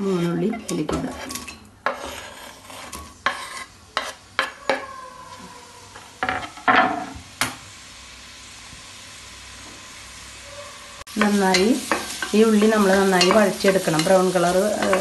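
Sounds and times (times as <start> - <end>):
onions sizzling in oil: 0.0 - 15.0
spoon knocking and scraping a pot: 0.2 - 4.9, 11.1 - 15.0.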